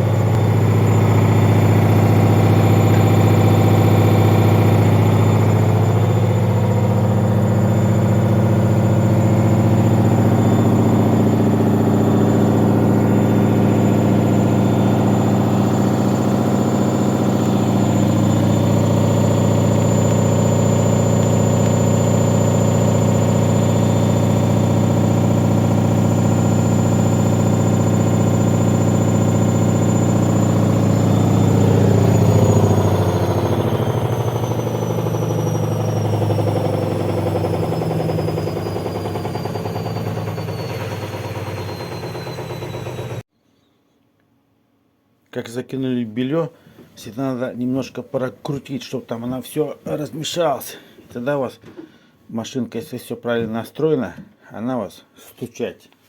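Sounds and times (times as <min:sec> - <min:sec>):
washing machine spinning: 0:00.0 - 0:43.3.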